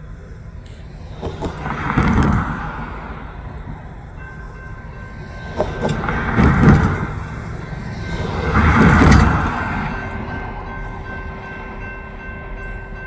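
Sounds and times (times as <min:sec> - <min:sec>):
freight train rumbling: 0:00.0 - 0:13.0
wheels knocking over rail joints: 0:01.1 - 0:03.8, 0:05.1 - 0:10.1.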